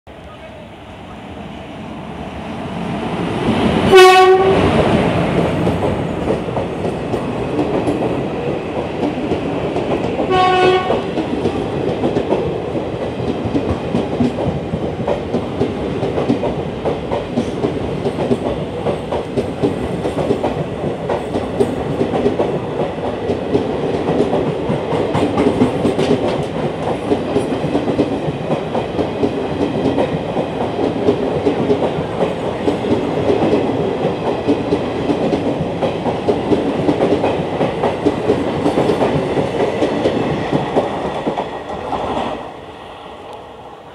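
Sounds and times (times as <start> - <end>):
train wheels clickety-clack: 3.1 - 42.5
locomotive horn blasts: 3.9 - 4.7, 10.3 - 11.1.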